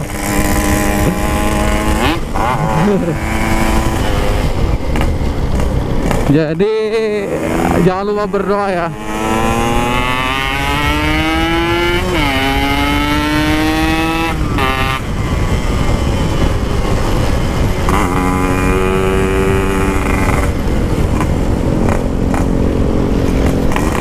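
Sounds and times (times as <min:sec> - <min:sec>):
motorcycle engine accelerating: 0:00.0 - 0:24.0.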